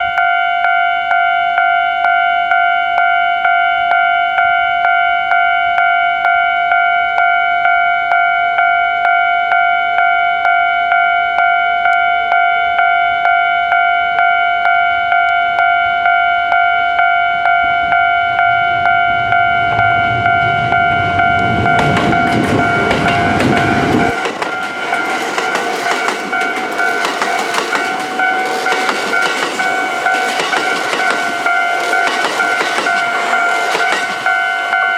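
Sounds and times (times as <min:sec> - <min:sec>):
level crossing warning bell: 0:00.0 - 0:34.9
train rumbling past: 0:16.0 - 0:34.9
train wheels clattering: 0:19.7 - 0:34.7.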